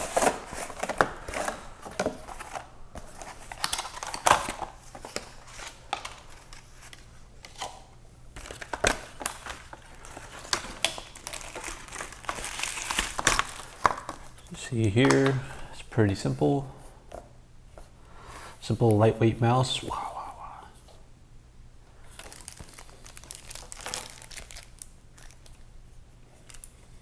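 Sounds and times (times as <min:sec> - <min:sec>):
packaging crinkling and rustling: 0:00.0 - 0:15.6, 0:22.0 - 0:25.6, 0:26.4 - 0:27.0.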